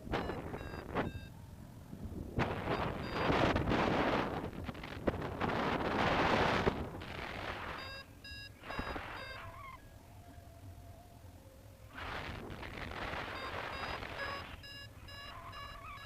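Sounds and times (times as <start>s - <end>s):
wind buffeting the microphone: 0.0s - 8.0s, 11.9s - 14.4s
variometer high beeps: 0.1s - 1.4s, 2.6s - 3.5s, 7.7s - 9.8s, 13.2s - 16.0s.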